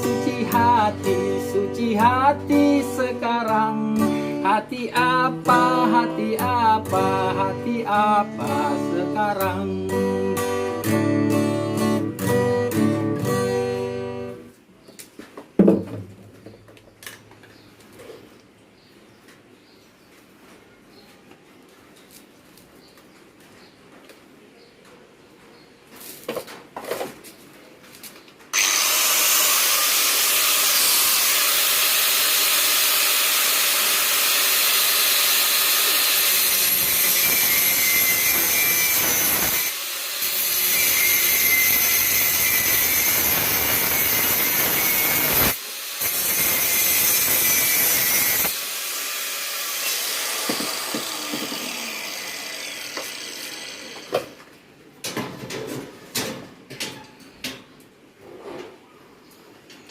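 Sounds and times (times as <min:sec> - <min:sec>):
electric power tool running: 0:28.6 - 0:54.3.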